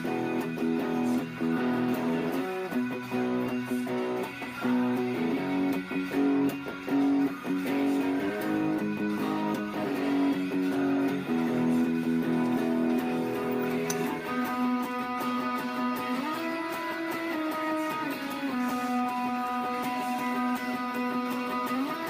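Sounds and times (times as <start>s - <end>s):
electric guitar playing: 0.0s - 22.0s.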